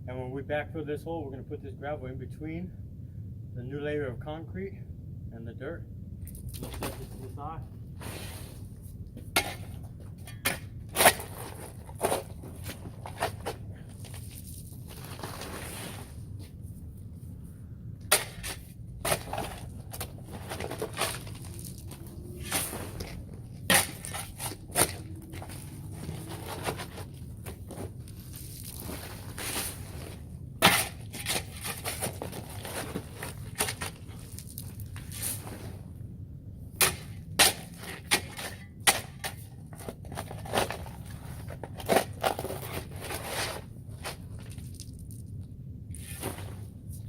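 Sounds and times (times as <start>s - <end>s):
shovel digging dirt and gravel: 6.3s - 16.3s, 18.0s - 35.8s, 36.8s - 45.2s, 45.9s - 47.0s.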